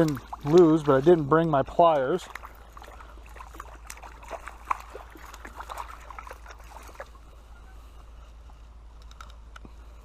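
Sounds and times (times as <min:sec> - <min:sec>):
water splashing: 0:00.0 - 0:08.0
stream trickling: 0:00.0 - 0:10.0.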